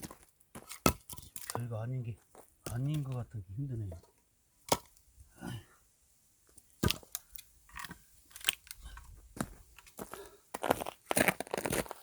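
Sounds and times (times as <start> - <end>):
wood cracking and crunching: 6.8 - 10.0, 10.6 - 12.0.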